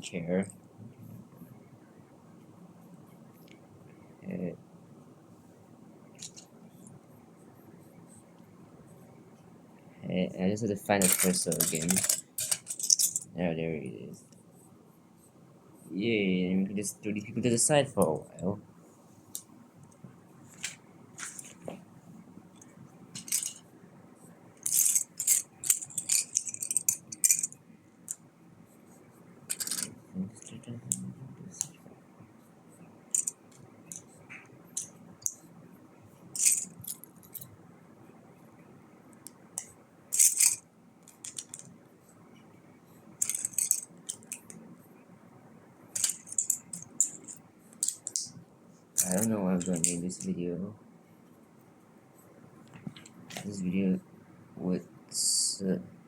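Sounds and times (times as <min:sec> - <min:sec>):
plastic toy bricks clicking: 0:49.0 - 0:50.0.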